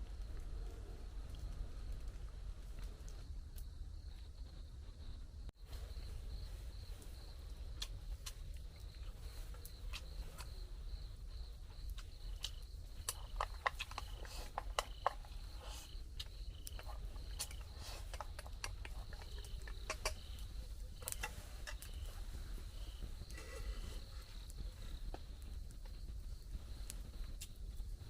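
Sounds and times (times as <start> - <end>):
insects chirring: 0.0 - 28.0
scattered ticks and taps: 7.5 - 22.1, 24.4 - 27.9.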